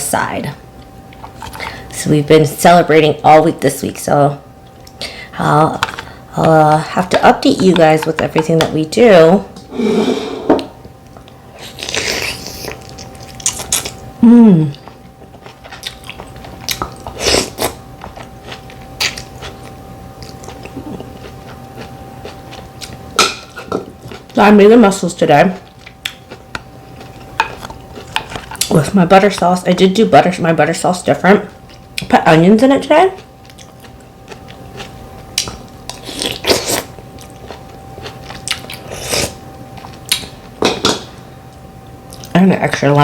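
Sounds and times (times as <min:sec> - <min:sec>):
person chewing: 0:11.6 - 0:14.0, 0:14.7 - 0:23.1, 0:25.6 - 0:28.7, 0:33.1 - 0:40.5.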